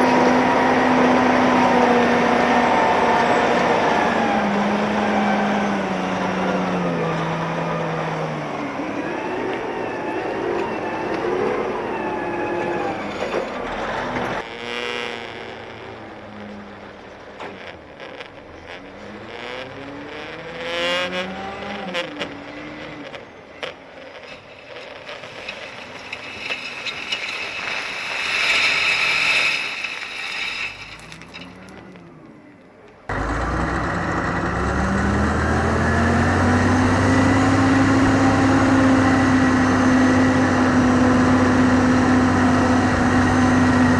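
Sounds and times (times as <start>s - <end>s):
wheel loader diesel engine revving: 0.0s - 9.8s, 33.1s - 43.9s
heavy diesel engine climbing in pitch: 0.0s - 23.6s, 30.8s - 43.9s.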